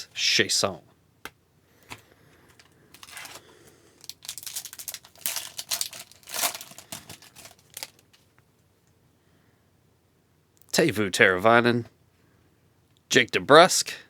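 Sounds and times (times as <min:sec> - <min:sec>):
foil wrapper crinkling: 0:02.5 - 0:08.2.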